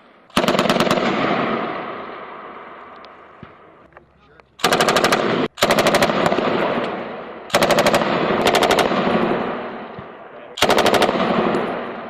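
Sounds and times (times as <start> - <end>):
machine gun firing bursts: 0.3 - 1.8, 4.6 - 9.8, 10.6 - 12.0
rolling gunfire echo: 0.3 - 3.9, 4.6 - 12.0.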